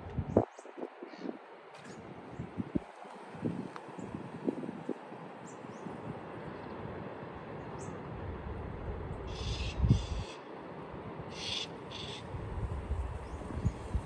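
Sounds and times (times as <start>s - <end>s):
bird harsh calls: 9.3s - 10.4s, 11.3s - 12.3s.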